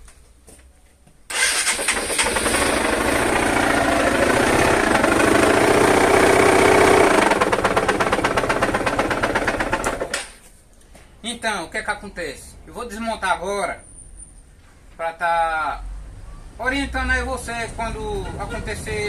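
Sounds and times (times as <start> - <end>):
motorcycle engine with mechanical noise: 1.3 - 10.4.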